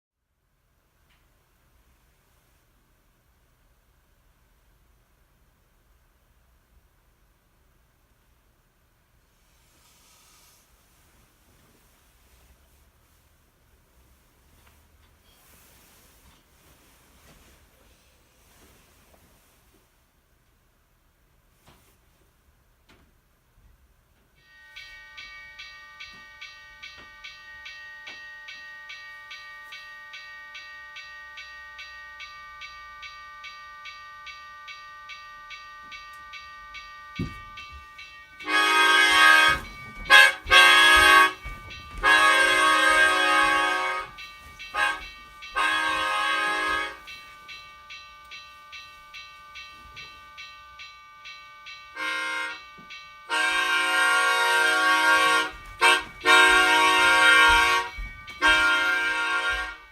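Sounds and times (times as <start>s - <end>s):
train rumbling: 0.5s - 59.9s
train air horn blasts: 24.4s - 50.4s, 51.0s - 59.9s
crossing bell ringing: 24.4s - 59.9s.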